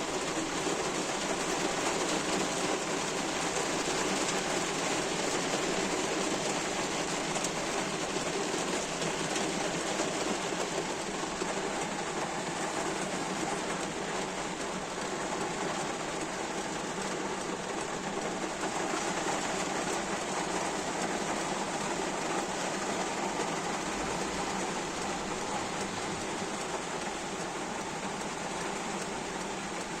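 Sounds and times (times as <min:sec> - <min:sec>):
heavy rain drumming on car roof: 0:00.0 - 0:30.0.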